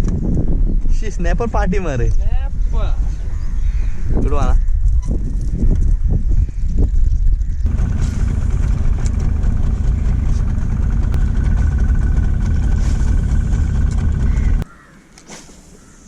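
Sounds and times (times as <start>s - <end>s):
outboard motor running: 7.7s - 14.6s.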